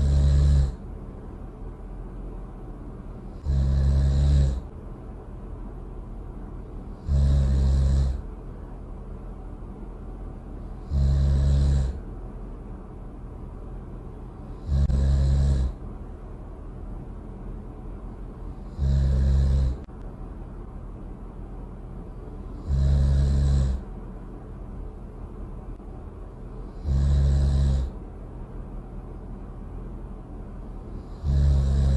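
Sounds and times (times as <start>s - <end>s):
loud snoring: 0.0s - 0.8s, 3.3s - 4.7s, 6.9s - 8.3s, 10.7s - 12.0s, 14.4s - 15.8s, 18.5s - 19.9s, 22.4s - 23.8s, 26.7s - 28.0s, 30.9s - 31.9s
steady low hum: 0.0s - 31.9s.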